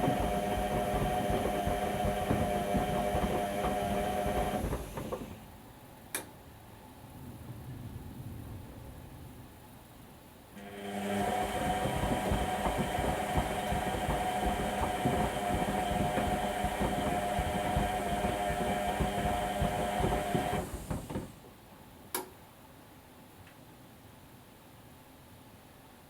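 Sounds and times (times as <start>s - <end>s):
washing machine motor whine: 0.0s - 5.6s, 10.6s - 21.5s
sharp click: 22.1s - 22.3s.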